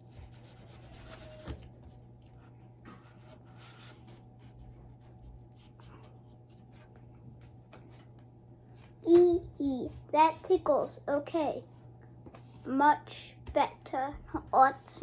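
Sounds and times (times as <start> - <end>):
fingers scratching on paper: 0.0 - 7.0
steady low hum: 0.0 - 15.0.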